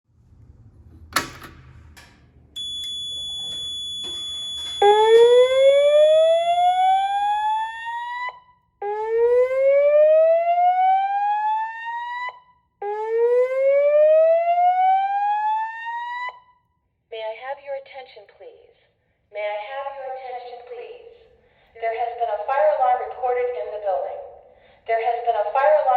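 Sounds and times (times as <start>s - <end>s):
fire alarm whoop tone: 2.6s - 16.6s.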